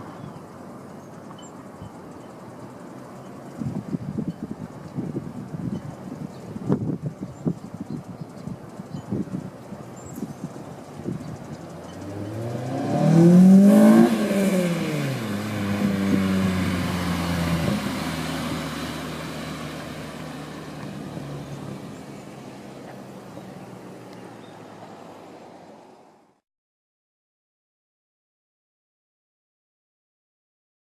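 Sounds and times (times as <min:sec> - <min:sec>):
car engine revving past: 0:11.7 - 0:24.0.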